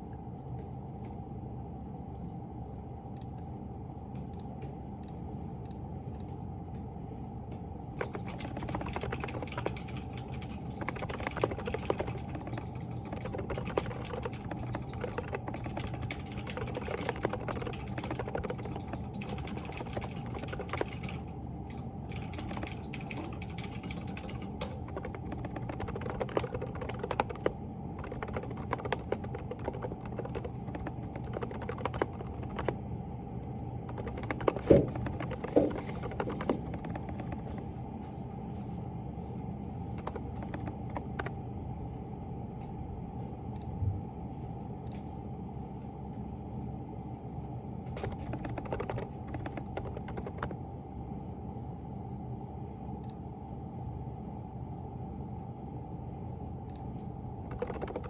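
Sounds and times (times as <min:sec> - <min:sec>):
low room hum: 0:00.0 - 0:58.0
fast typing on keyboard: 0:08.0 - 0:32.9, 0:33.6 - 0:37.8, 0:39.9 - 0:41.4, 0:48.0 - 0:50.6, 0:57.4 - 0:58.0.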